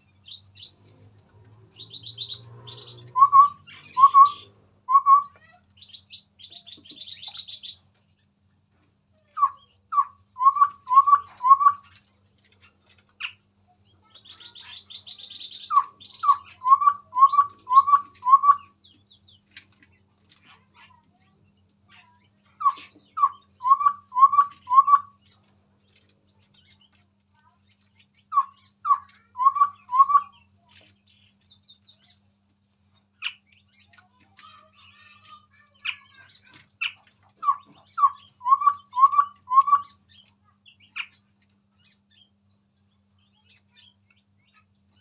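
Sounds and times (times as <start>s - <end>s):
bird chattering trills: 0.0s - 45.0s
bird whistling hollow notes: 3.1s - 5.4s.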